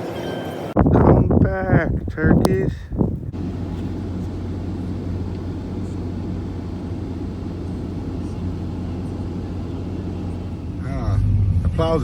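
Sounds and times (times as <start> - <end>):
pickup truck engine running: 0.8 - 12.0.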